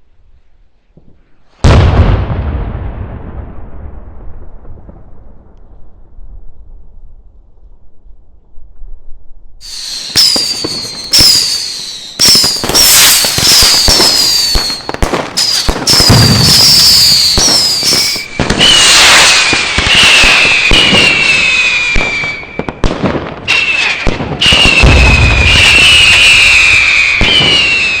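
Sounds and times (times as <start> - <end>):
fireworks hissing and crackling: 9.6 - 28.0
fireworks whistling: 9.6 - 28.0.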